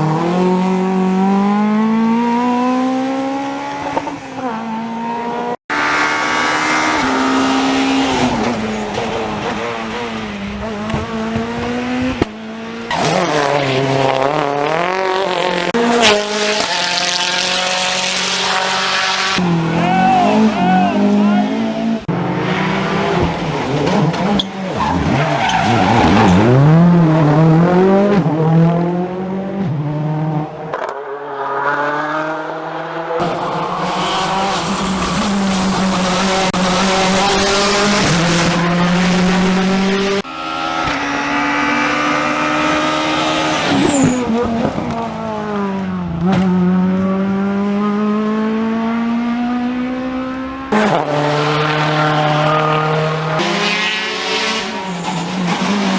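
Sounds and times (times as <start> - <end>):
rally car engines revving: 0.0 - 55.9.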